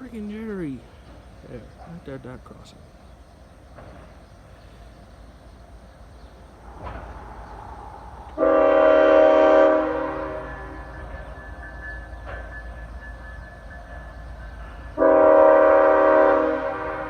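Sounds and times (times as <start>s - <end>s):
low train rumble: 0.0s - 17.0s
train air horn blast: 8.4s - 11.2s, 15.0s - 17.0s.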